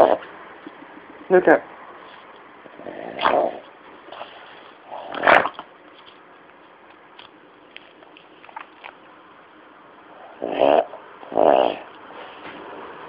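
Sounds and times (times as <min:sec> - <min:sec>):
dog snoring: 0:00.0 - 0:00.3, 0:02.7 - 0:05.5, 0:10.2 - 0:12.0.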